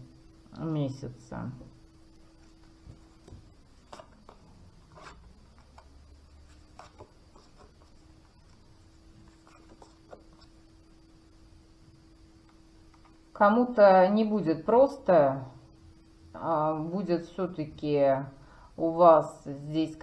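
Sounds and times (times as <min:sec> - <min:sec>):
low steady hum: 0:00.0 - 0:20.0
cards rustling and sliding: 0:02.5 - 0:10.7.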